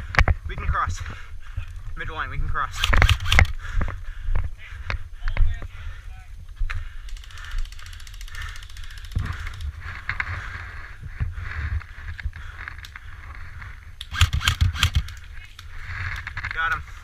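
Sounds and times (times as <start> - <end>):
airsoft gun firing burst: 2.7 - 3.6, 14.1 - 15.2.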